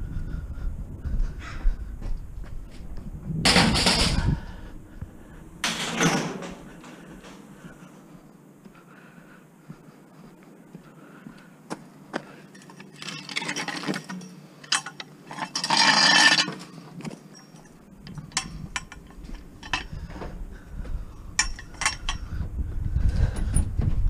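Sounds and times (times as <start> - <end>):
low rumble: 0.0 - 5.7, 17.8 - 24.0
scrap metal clinks and knocks: 3.5 - 4.4, 12.5 - 20.3, 21.1 - 22.3.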